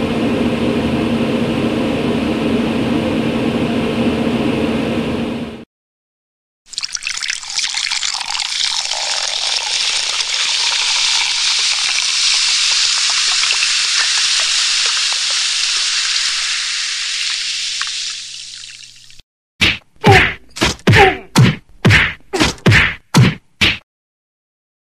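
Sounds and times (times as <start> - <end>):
carbonated drink fizzing: 6.7 - 19.2.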